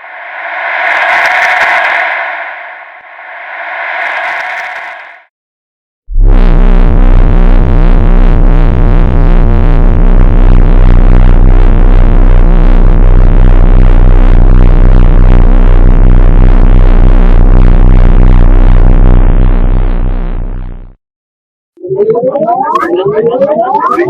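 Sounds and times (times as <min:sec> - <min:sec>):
electronic ufo drone: 0:00.0 - 0:05.3, 0:06.2 - 0:21.0, 0:21.8 - 0:24.0
fast electronic warbling: 0:21.8 - 0:24.0.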